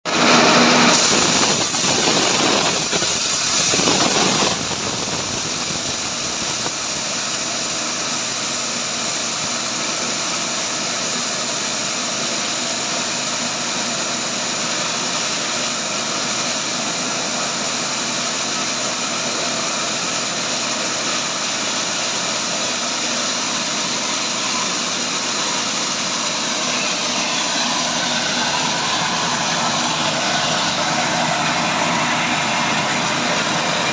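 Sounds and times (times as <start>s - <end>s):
machine grinding corn kernels: 0.1s - 33.9s.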